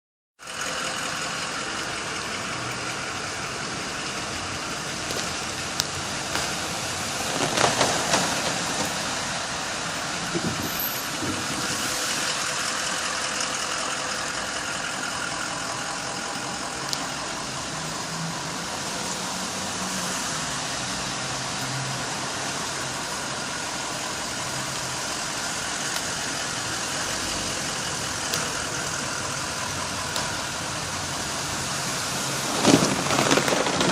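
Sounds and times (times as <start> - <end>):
car traffic passing: 0.4 - 33.9
water rushing over wall: 4.6 - 13.1, 24.7 - 33.9.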